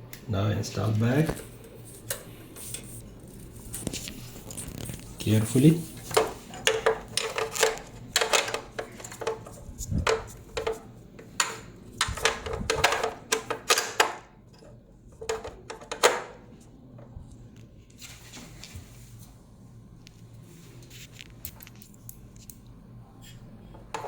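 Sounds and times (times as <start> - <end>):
parts clicking and knocking: 6.0 - 16.4.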